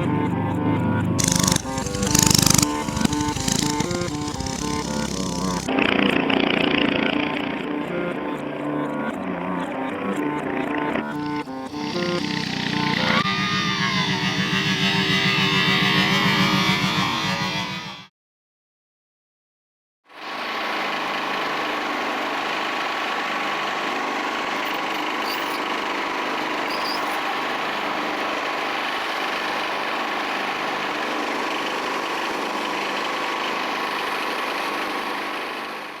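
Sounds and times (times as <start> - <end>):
small gasoline engine running: 0.8 - 8.2, 10.2 - 17.6, 20.2 - 36.0.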